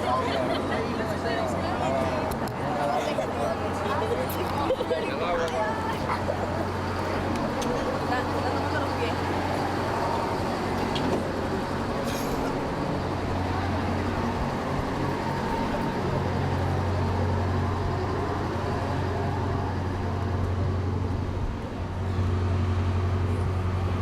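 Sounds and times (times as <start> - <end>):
street noise: 0.0 - 24.0.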